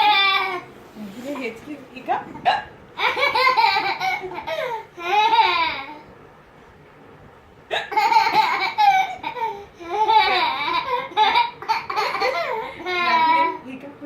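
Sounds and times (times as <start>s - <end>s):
child laughing and babbling: 7.9s - 13.6s.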